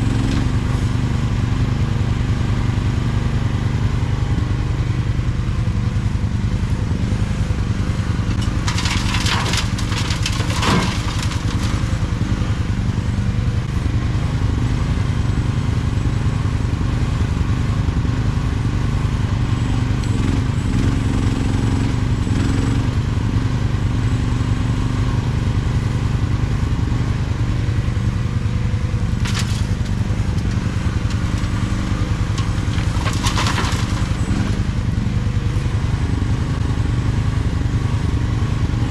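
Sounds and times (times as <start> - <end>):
excavator engine running: 0.0 - 16.3, 25.2 - 38.9
gravel clattering against bucket: 8.3 - 12.0, 29.2 - 34.7.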